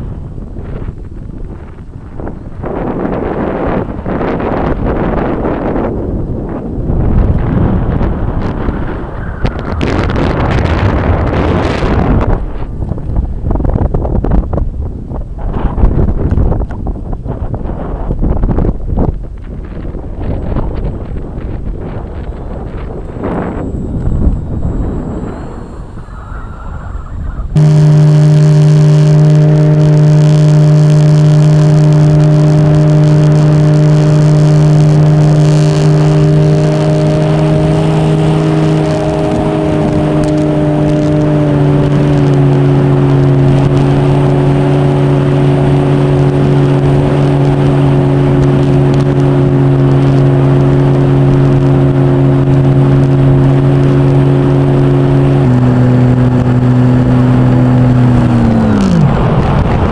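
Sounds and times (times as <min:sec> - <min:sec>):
wind noise: 0:00.0 - 0:59.9
model airplane motor and propeller: 0:15.4 - 0:59.8.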